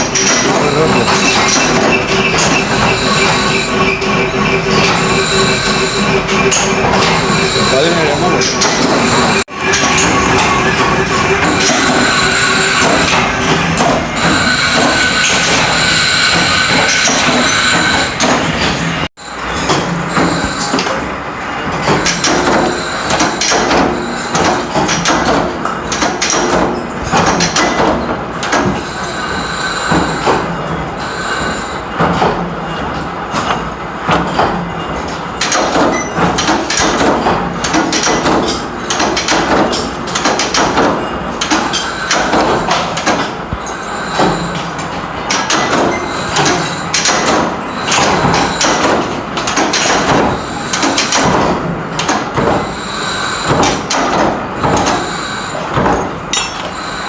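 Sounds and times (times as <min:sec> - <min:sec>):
high-pitched grinding whine: 0:00.0 - 0:23.2, 0:56.4 - 0:57.0
metal knocks and scraping: 0:00.0 - 0:29.0, 0:29.8 - 0:52.7.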